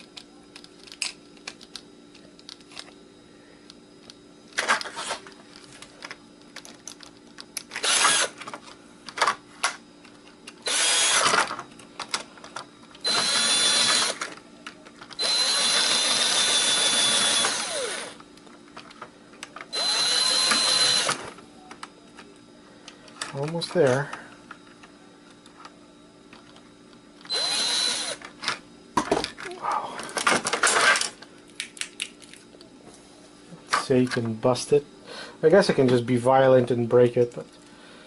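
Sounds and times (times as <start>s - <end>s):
power drill whining: 7.8s - 8.4s, 10.6s - 11.4s, 13.0s - 14.2s, 15.2s - 18.2s, 19.7s - 21.2s, 27.3s - 28.2s.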